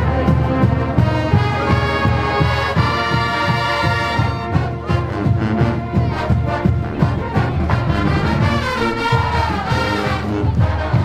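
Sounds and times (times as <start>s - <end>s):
marching band playing: 0.0s - 11.0s
steady drum beat: 3.9s - 11.0s
brass sustained chords: 5.5s - 11.0s.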